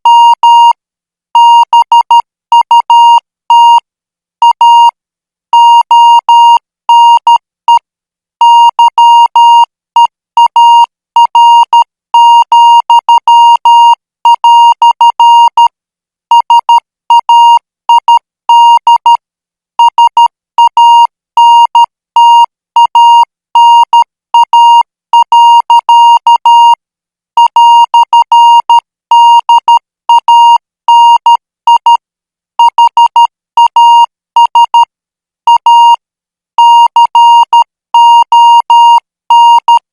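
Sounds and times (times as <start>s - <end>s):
morse code beeps: 19.8s - 26.8s, 27.4s - 32.0s, 32.6s - 34.9s, 35.5s - 36.0s, 36.6s - 39.8s.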